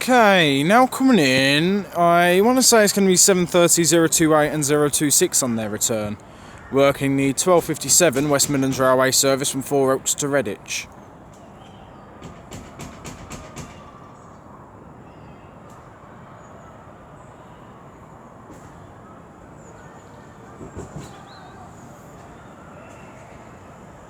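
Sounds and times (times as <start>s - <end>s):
train rumbling: 0.0s - 10.8s
knocks: 7.4s - 9.3s, 12.2s - 13.8s.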